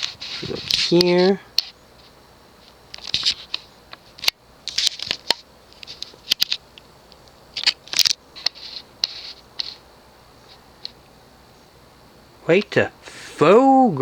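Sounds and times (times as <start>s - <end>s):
rustling and crackling packaging: 0.0s - 11.0s.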